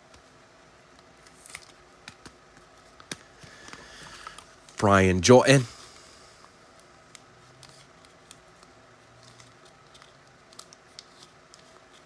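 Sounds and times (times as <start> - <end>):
card rustling: 6.8 - 12.0.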